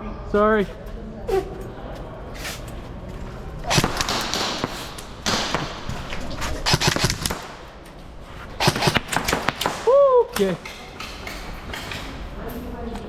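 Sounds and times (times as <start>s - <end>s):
airsoft guns firing: 3.6s - 12.1s.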